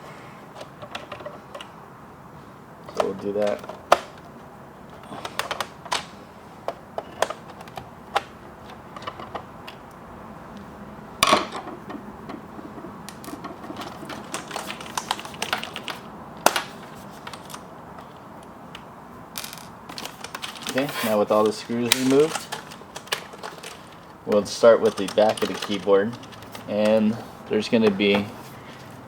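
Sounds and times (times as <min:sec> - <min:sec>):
plastic keyboard clicks and knocks: 0:00.6 - 0:01.7, 0:05.0 - 0:06.1, 0:06.7 - 0:09.8, 0:11.2 - 0:18.2, 0:21.4 - 0:27.0.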